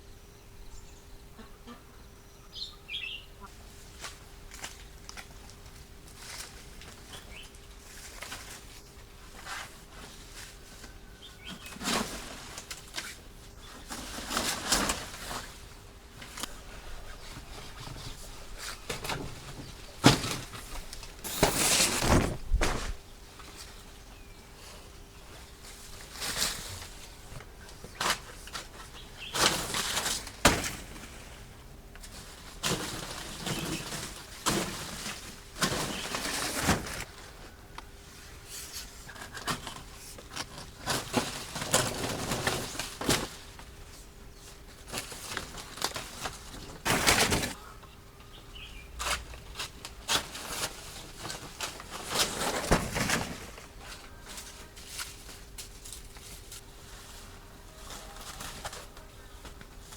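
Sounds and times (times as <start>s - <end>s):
faint steady hum: 0.0s - 59.9s
hands rustling and scraping: 3.9s - 23.9s.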